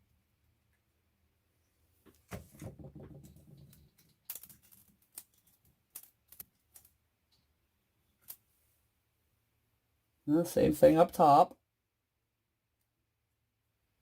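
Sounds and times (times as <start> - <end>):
parts rattling: 2.2 - 7.5
small plastic and metal parts clicking: 3.6 - 7.5, 8.1 - 8.4.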